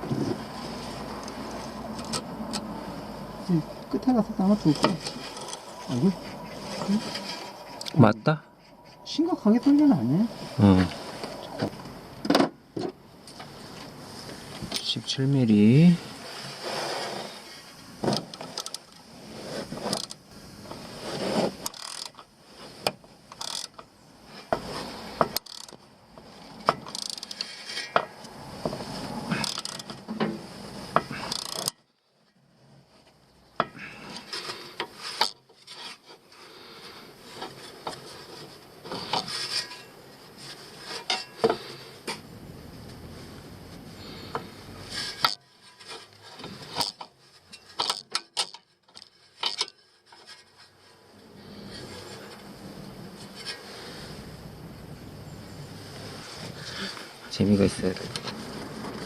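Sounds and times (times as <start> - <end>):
metal tools clinking and scraping: 4.4 - 8.1, 29.3 - 31.7, 37.3 - 42.2, 44.9 - 52.4
ratchet wrench clicking: 21.6 - 22.2, 23.4 - 23.8, 25.3 - 25.8, 26.8 - 27.5, 29.4 - 29.9, 31.3 - 31.7.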